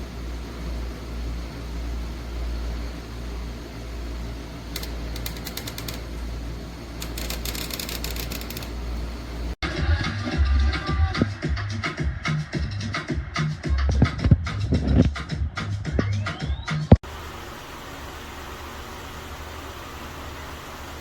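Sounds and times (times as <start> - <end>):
electric fan humming: 0.0 - 9.6, 17.0 - 21.0
rapid clicking: 4.6 - 6.4, 7.0 - 9.2.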